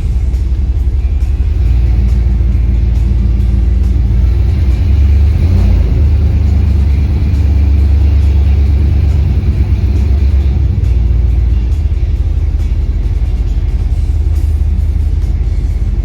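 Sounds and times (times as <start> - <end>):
engine deep rumble: 0.0 - 16.0.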